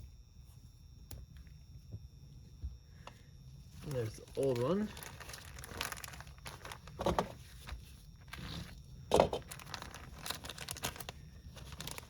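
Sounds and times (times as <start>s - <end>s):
plastic packaging crinkling: 3.8s - 12.0s.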